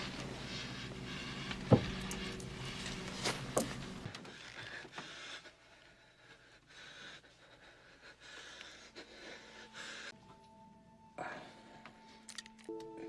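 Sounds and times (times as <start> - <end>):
man breathing heavily: 0.0 - 10.2.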